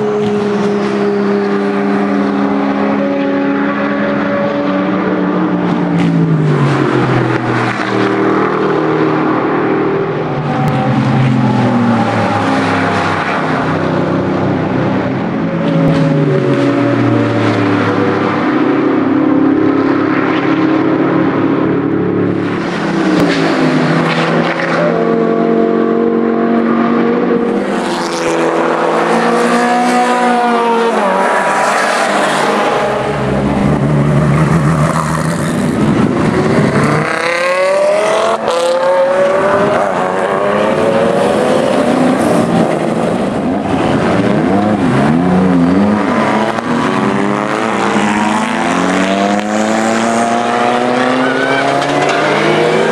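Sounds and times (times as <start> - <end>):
racing car engines passing: 0.0 - 52.9.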